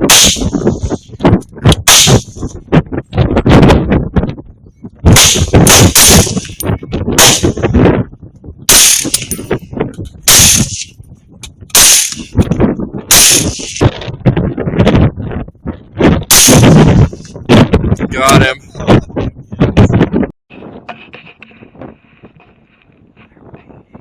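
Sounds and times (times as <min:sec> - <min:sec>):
rifle shots echoing: 0:00.0 - 0:00.9, 0:01.8 - 0:02.4, 0:05.2 - 0:06.6, 0:07.2 - 0:07.6, 0:08.7 - 0:09.5, 0:10.3 - 0:10.9, 0:11.8 - 0:12.4, 0:13.1 - 0:13.8, 0:16.3 - 0:17.0.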